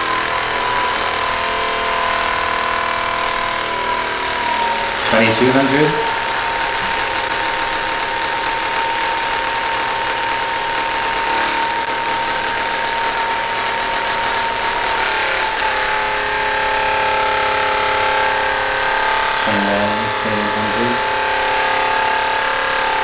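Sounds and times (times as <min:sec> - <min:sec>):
massage gun buzzing: 0:00.0 - 0:23.0.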